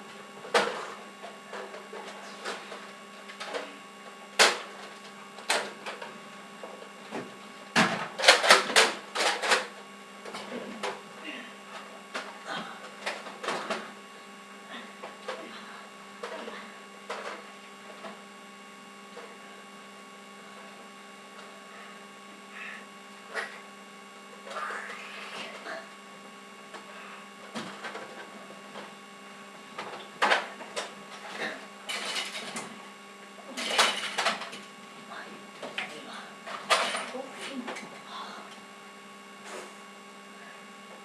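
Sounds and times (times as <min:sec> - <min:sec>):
steady electrical hum: 0:00.0 - 0:41.0.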